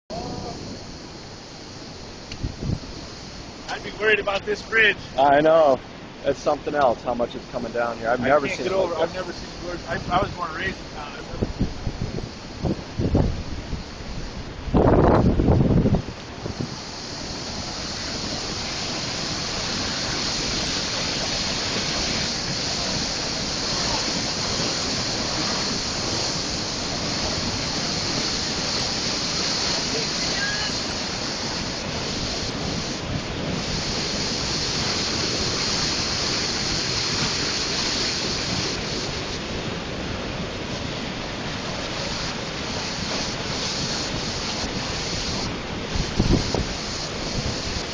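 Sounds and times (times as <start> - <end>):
river water rushing: 0.1 - 47.9.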